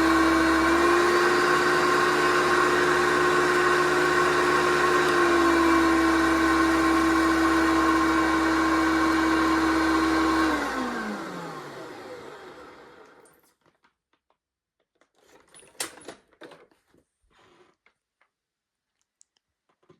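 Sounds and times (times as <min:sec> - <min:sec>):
vacuum cleaner running: 0:00.0 - 0:13.3.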